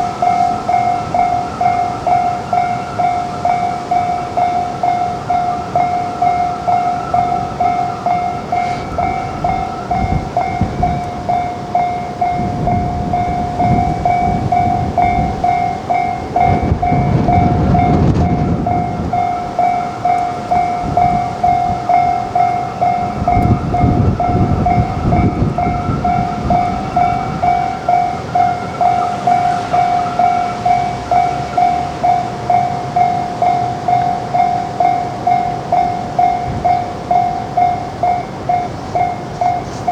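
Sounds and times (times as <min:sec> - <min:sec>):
level crossing warning bell: 0:00.0 - 0:39.9
train rumble and wheel noise: 0:00.0 - 0:39.9.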